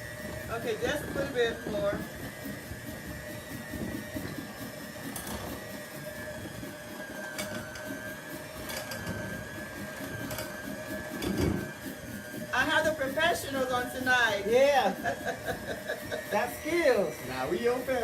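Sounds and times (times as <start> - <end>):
electric hand mixer whine: 0.0 - 18.0.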